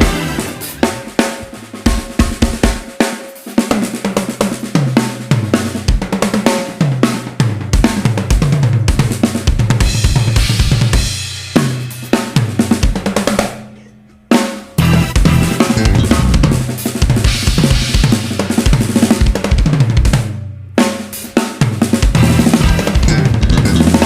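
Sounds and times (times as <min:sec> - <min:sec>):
drum kit playing a groove: 0:00.0 - 0:24.0
bass line: 0:14.8 - 0:17.7, 0:22.1 - 0:24.0.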